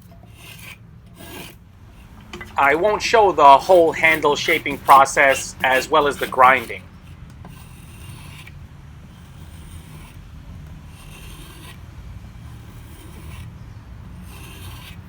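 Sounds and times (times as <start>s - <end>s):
hand tool scraping wood: 0.0s - 8.6s, 12.4s - 15.0s.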